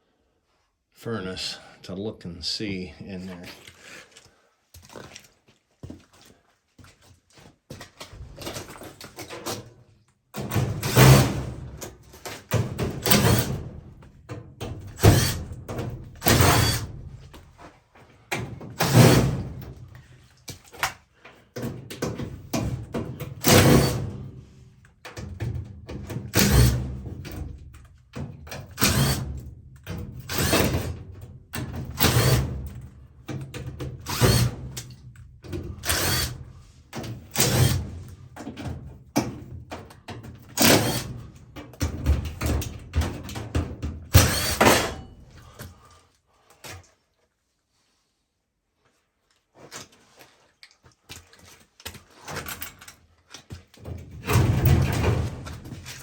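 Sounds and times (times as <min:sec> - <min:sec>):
tools clattering and knocking: 0:29.8 - 0:45.6, 0:51.2 - 0:56.0.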